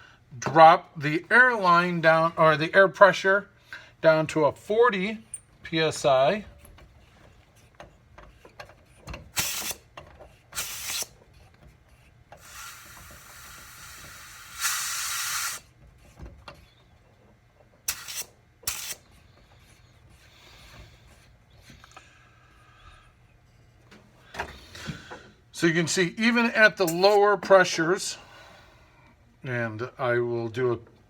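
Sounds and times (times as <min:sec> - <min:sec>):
compressed air hissing: 0:09.3 - 0:09.9, 0:10.5 - 0:11.2, 0:12.4 - 0:15.8, 0:17.9 - 0:19.1.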